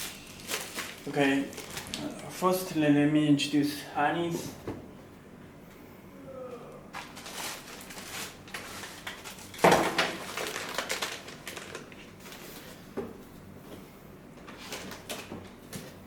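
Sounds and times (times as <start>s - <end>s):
plastic packaging rustling: 0.0s - 2.2s, 6.9s - 12.9s, 14.5s - 15.9s.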